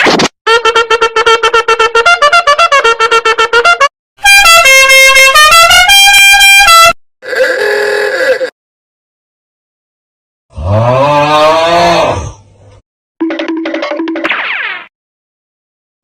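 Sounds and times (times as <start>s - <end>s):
horn-like tone melody: 0.5s - 7.0s.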